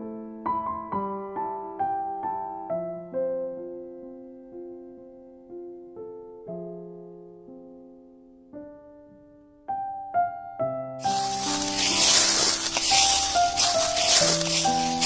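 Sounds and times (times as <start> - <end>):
soft slow piano music: 0.0 - 15.0
loud crackling rustle: 11.0 - 15.0.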